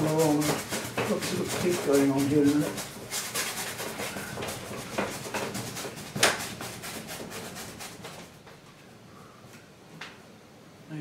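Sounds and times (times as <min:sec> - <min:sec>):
paintbrush scrubbing canvas: 0:00.0 - 0:08.4.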